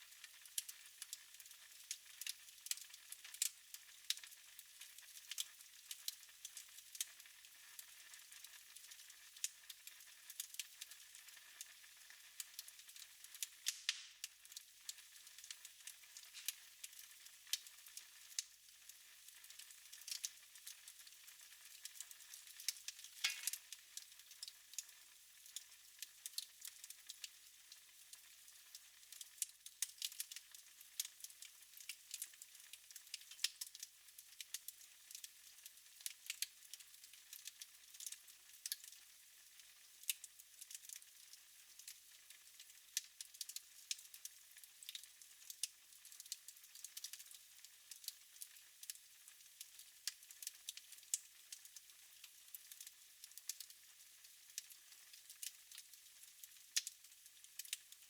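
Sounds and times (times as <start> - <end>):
wood fire crackling and popping: 0.0 - 51.6, 52.4 - 53.7, 54.5 - 57.9
faint fire hiss: 8.0 - 24.9.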